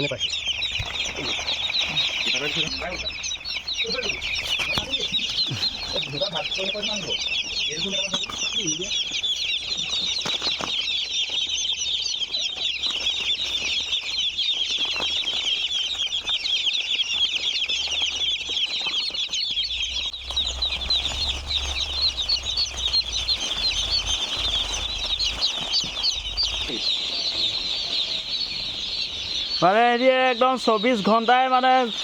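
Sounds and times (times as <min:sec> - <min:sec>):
chicks peeping: 0:00.0 - 0:32.0
low rumble: 0:19.6 - 0:27.7.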